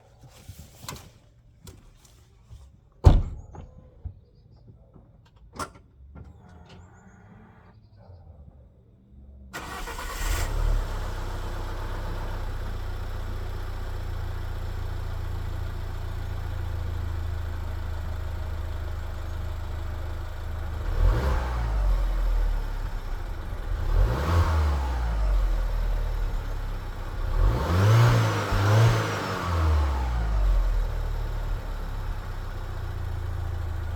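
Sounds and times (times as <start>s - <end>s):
car engine starting and idling: 9.5s - 33.9s
engine revving: 9.6s - 11.7s, 20.7s - 31.7s.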